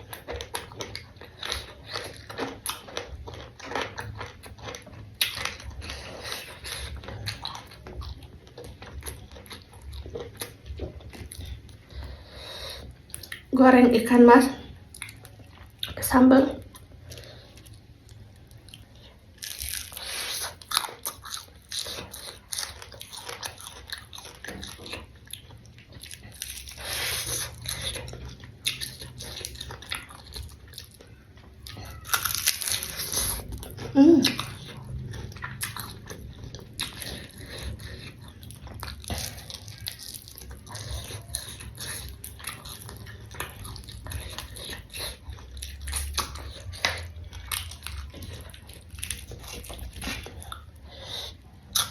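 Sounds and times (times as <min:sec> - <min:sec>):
crunchy bites and chewing: 0:16.7 - 0:51.9.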